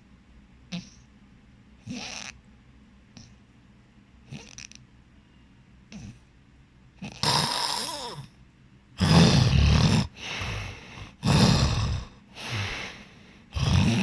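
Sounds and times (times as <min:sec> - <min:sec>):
person snoring heavily: 0:07.0 - 0:08.3, 0:09.0 - 0:14.0.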